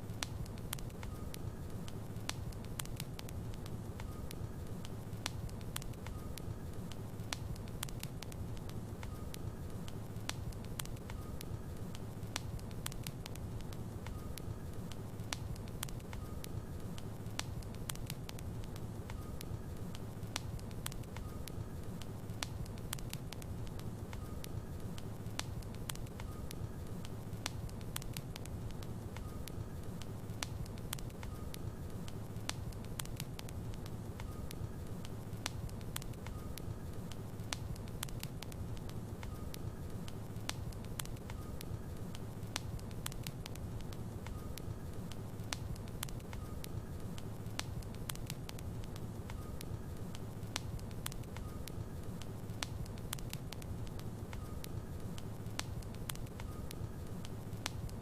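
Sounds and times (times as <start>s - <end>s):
low rumble of flames: 0.0s - 58.0s
wood fire crackling and popping: 0.0s - 58.0s.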